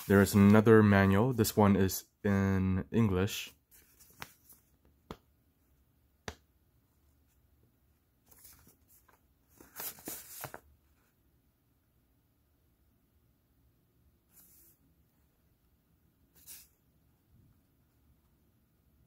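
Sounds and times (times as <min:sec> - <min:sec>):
paper rustling: 0:03.7 - 0:04.8, 0:08.3 - 0:10.7, 0:16.4 - 0:16.7.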